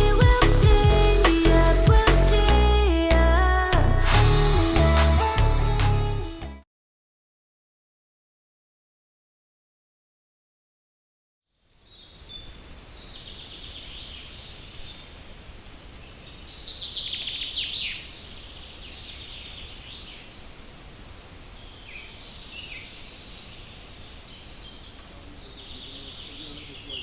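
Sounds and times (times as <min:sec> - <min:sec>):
small birds chirping: 0:11.7 - 0:27.0.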